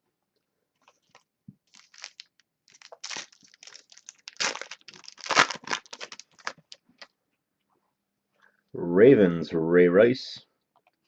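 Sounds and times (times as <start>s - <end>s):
wrapper crinkling: 0.9s - 7.1s
wrapper ripping: 1.1s - 6.8s.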